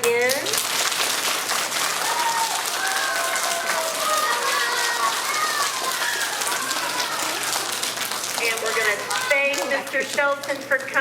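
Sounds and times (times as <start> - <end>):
children clapping: 0.0 - 11.0
children calling out: 1.7 - 9.9.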